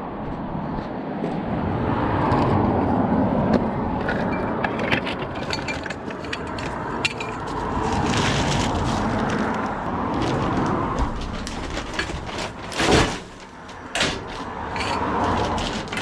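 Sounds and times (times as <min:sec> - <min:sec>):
street traffic passing: 0:00.0 - 0:16.0
scrap metal clinking: 0:04.0 - 0:09.6, 0:11.2 - 0:16.0.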